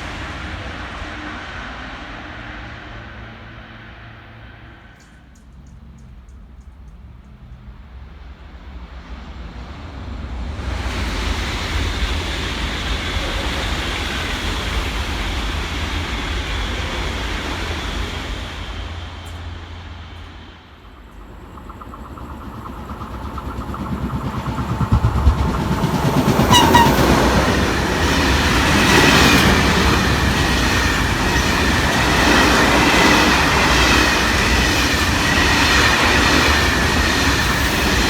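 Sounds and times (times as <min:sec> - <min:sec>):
train passing at speed: 0:00.0 - 0:38.0
train wheels clattering on rail joints: 0:18.7 - 0:38.0.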